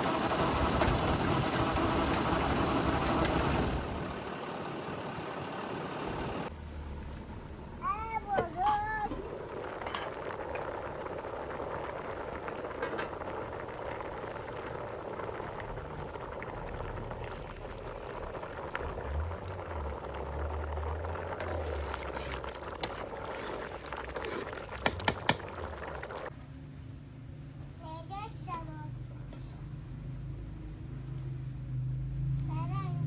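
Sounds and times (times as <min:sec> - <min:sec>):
liquid boiling and bubbling: 0:00.0 - 0:26.4.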